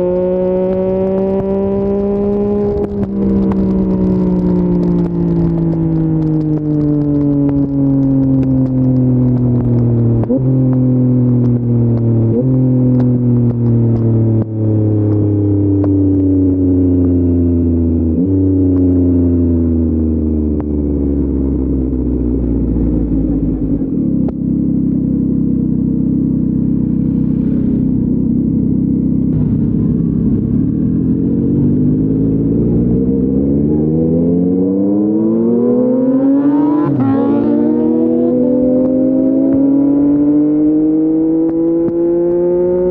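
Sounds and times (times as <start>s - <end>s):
motorcycle engine revving: 0.0s - 42.9s.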